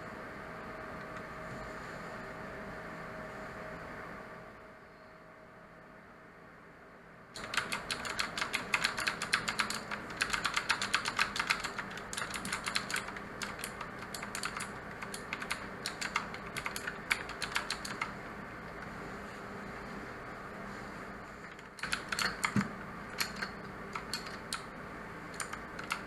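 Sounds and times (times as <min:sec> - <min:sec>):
mechanical keyboard typing: 0:07.4 - 0:18.9, 0:21.5 - 0:24.7, 0:25.3 - 0:26.0.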